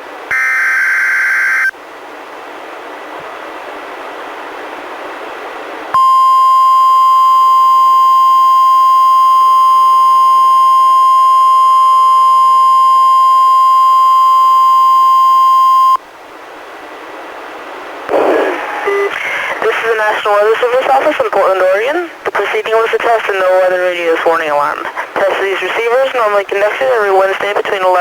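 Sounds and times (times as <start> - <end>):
loud steady alarm tone: 0.3 - 1.7
radio hiss: 18.1 - 28.0.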